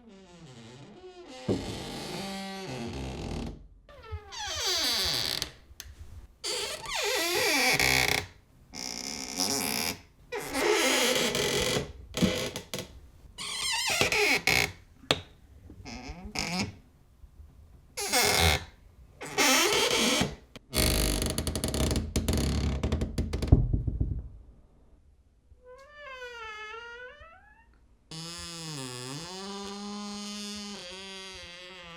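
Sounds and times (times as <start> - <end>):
door hinges creaking: 0.0 - 5.6, 8.9 - 15.3, 18.0 - 23.7, 25.8 - 31.9.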